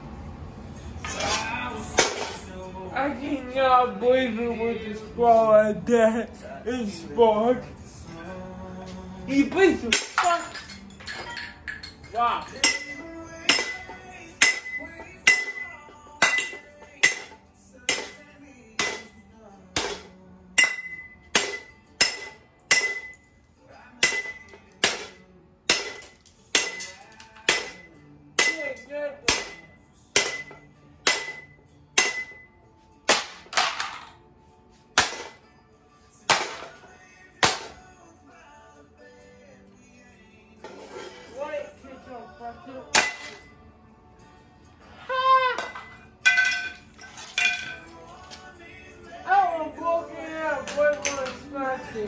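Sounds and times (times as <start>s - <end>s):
background music: 0.0s - 52.0s
hard blows with metallic ring: 12.4s - 23.3s, 24.0s - 33.5s.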